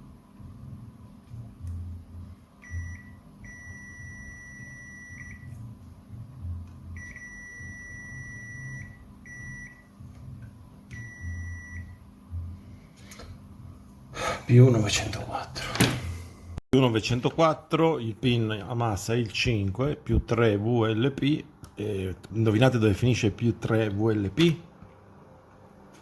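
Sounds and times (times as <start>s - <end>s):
multimeter continuity beeps: 2.6s - 5.7s, 6.8s - 10.0s, 10.9s - 12.0s.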